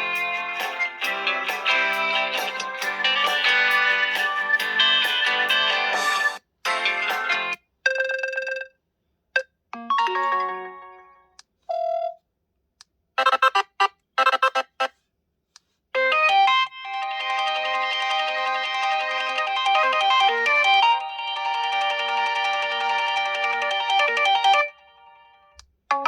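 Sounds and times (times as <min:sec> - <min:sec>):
phone ringtone melodies: 0:00.0 - 0:08.7, 0:13.2 - 0:14.9, 0:16.0 - 0:26.0.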